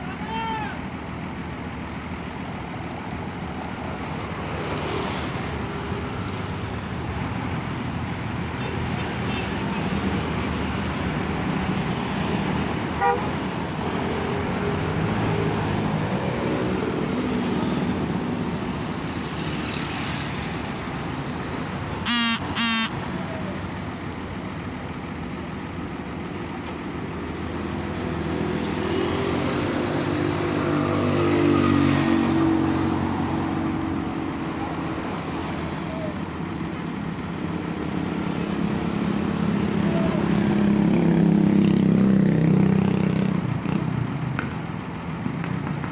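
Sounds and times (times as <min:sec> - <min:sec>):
bus engines passing: 0:00.0 - 0:45.9
short horn blasts: 0:22.0 - 0:23.0.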